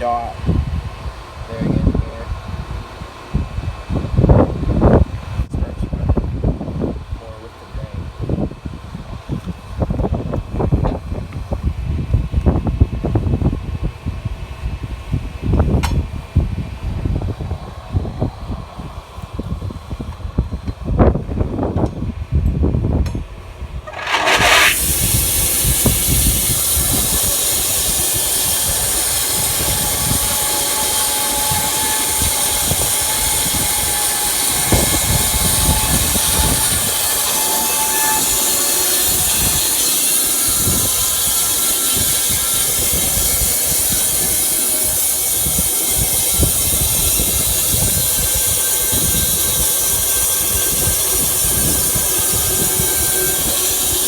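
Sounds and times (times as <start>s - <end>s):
band sawmill cutting wood: 23.9s - 54.0s.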